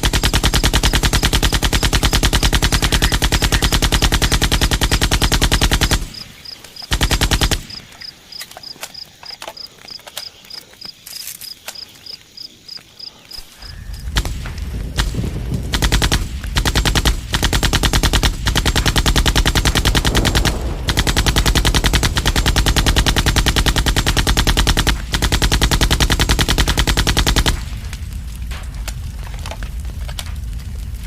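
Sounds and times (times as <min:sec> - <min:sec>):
machine gun automatic bursts: 0:00.0 - 0:08.0, 0:13.7 - 0:27.9.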